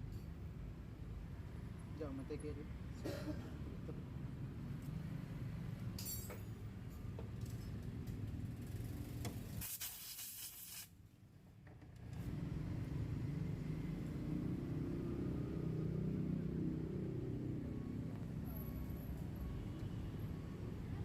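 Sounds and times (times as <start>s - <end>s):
loud hiss: 9.6s - 10.9s.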